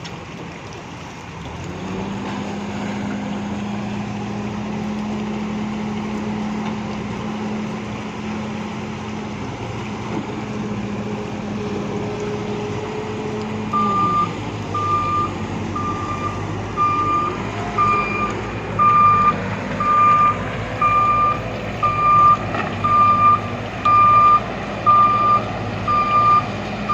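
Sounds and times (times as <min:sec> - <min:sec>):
diesel engine running: 0:00.0 - 0:26.9
reversing alarm beeping: 0:13.7 - 0:26.9.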